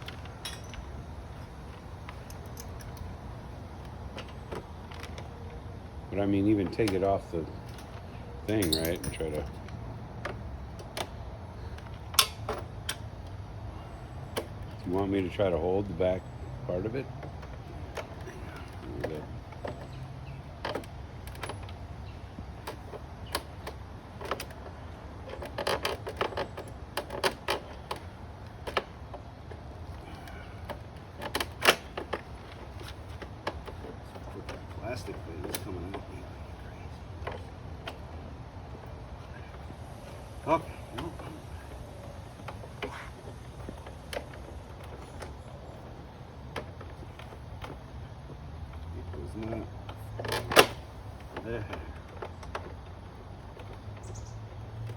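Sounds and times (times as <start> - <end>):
steady low hum: 0.0 - 54.9
tools clicking against metal: 8.5 - 9.5, 12.2 - 13.0
hand tools clicking and tapping: 8.5 - 13.4, 22.6 - 36.1.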